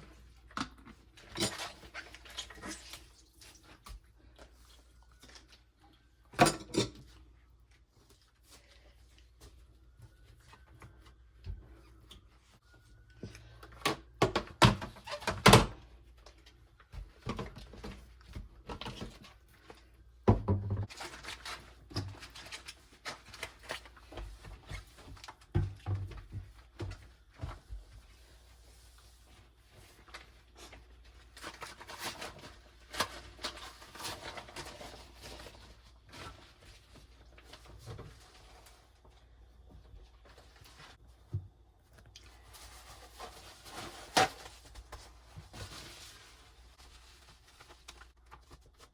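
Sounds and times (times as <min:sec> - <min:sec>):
cupboard doors and drawers knocking: 0:20.3 - 0:20.9.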